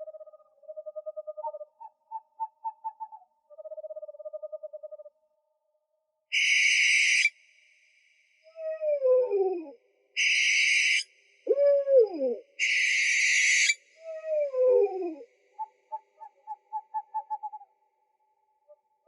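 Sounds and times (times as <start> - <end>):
owl hooting: 6.3 - 7.3, 8.6 - 17.7
owl screeching: 6.3 - 7.3, 10.2 - 12.0, 12.6 - 14.7.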